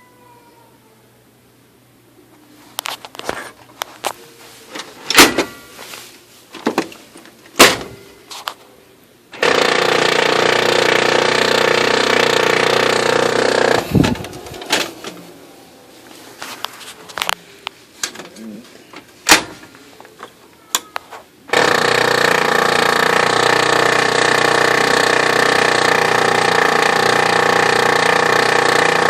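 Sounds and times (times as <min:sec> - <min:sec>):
sharp clunks: 0:05.1 - 0:05.6, 0:07.6 - 0:08.1
printer grinding loudly: 0:07.6 - 0:08.1, 0:09.4 - 0:15.3, 0:21.5 - 0:29.0.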